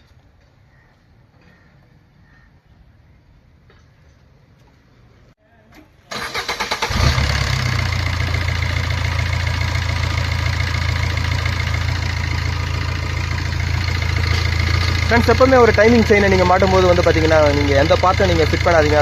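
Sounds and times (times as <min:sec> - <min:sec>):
car starter cranking: 0:06.1 - 0:19.0
car engine idling: 0:06.8 - 0:19.0.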